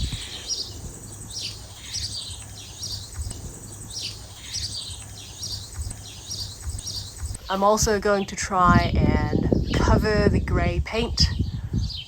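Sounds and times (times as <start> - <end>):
low background rumble: 0.0 - 11.0
small birds chirping: 0.0 - 12.0.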